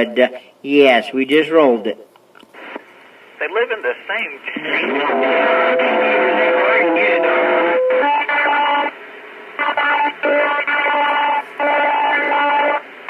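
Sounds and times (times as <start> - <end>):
garbled robotic radio transmission: 3.6 - 9.0, 9.6 - 12.9.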